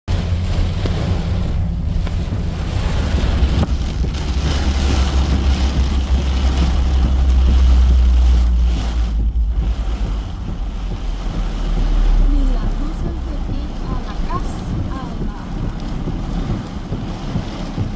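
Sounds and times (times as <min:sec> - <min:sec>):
storm wind buffeting microphone: 0:00.1 - 0:17.9.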